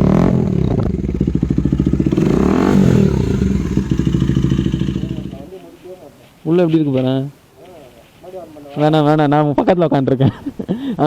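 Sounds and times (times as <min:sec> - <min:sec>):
motorcycle engine revving: 0:00.0 - 0:05.5.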